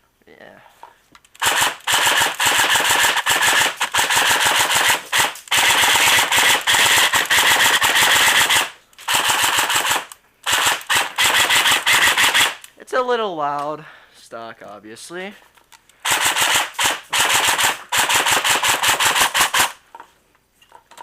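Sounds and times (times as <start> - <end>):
airsoft gun firing: 1.4 - 12.7, 16.0 - 19.8.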